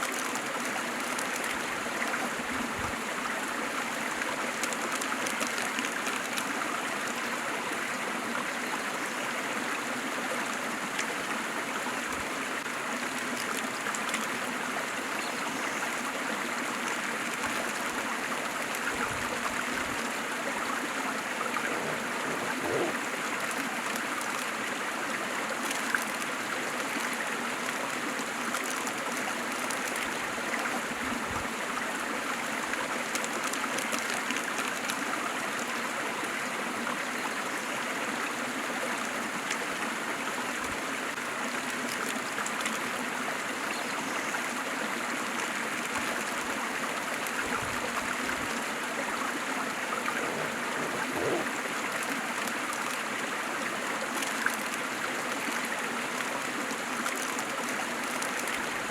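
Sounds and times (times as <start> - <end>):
small sharp water splashes: 15.9 - 30.8, 45.3 - 58.9
waterfall rushing: 21.0 - 23.6, 48.8 - 51.9.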